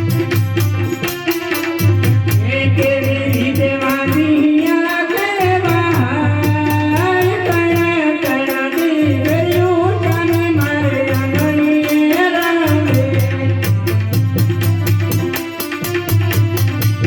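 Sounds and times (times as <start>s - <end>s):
deep drum beat: 0.0s - 3.7s, 12.7s - 17.0s.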